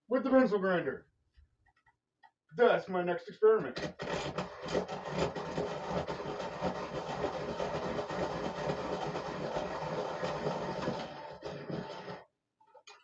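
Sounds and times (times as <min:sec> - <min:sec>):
electric pencil sharpener grinding: 0:03.8 - 0:12.3.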